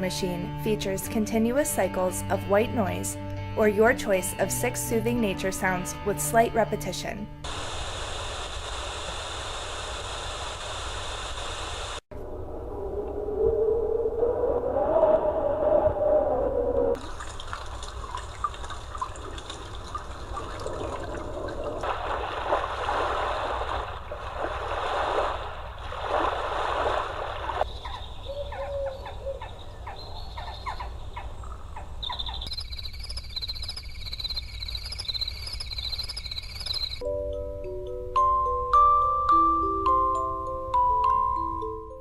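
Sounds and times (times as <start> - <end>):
trickling rushing water: 17.0 - 27.7
fast high chirping: 32.0 - 37.0
short clicking calls: 32.1 - 37.0.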